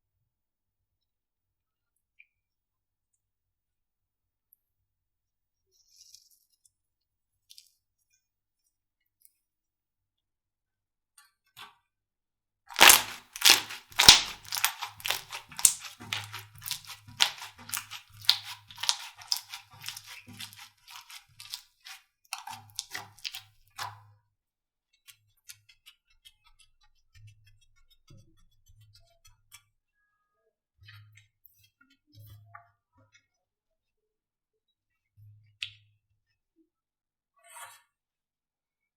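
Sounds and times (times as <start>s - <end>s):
slime popping and crackling: 12.7s - 21.6s, 22.4s - 23.4s.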